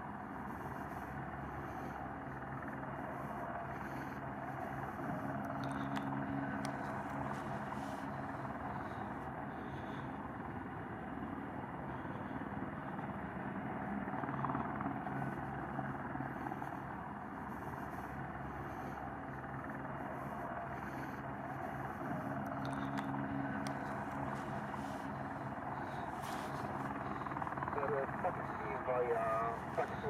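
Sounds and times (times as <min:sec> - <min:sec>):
helicopter engine and rotor: 0:00.0 - 0:30.0.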